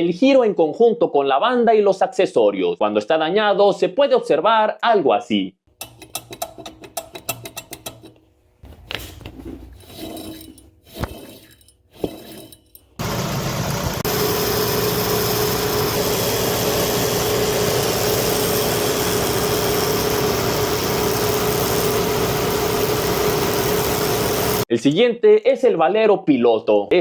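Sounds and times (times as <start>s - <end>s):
pulley bearing whine: 9.8s - 24.6s
car engine running: 13.0s - 24.6s.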